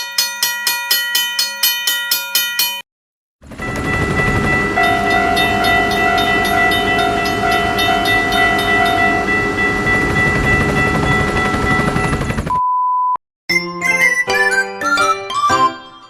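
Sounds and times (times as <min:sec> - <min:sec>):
train rumble and rattle: 0:03.5 - 0:12.5
high steady tones: 0:03.6 - 0:12.5.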